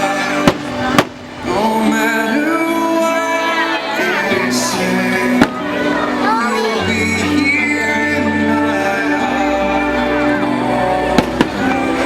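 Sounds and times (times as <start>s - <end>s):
firework bangs: 0.0s - 1.7s, 11.1s - 12.0s
music with singing: 0.0s - 12.0s.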